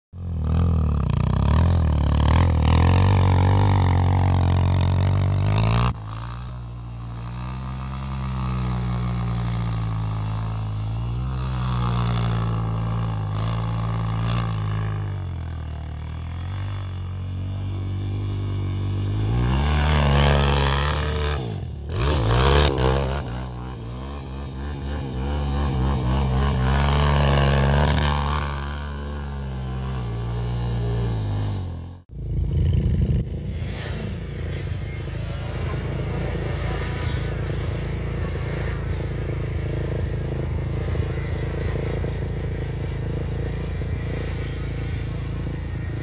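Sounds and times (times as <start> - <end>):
atv engines revving: 0.2 - 46.0.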